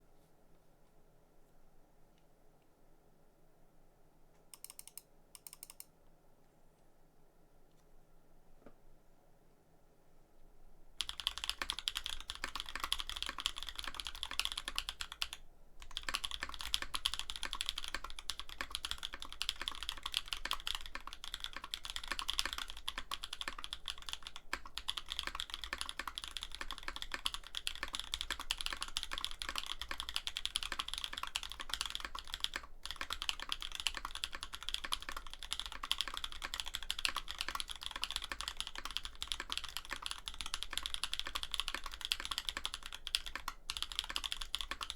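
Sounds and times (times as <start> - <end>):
mechanical keyboard typing: 4.6 - 5.9, 11.0 - 44.9.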